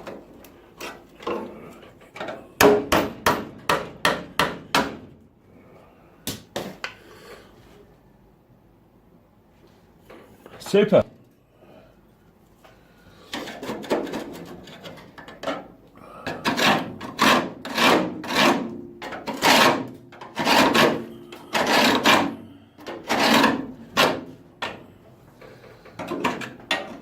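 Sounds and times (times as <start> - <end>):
hand tool scraping sheet metal: 13.3 - 15.1, 16.3 - 24.4.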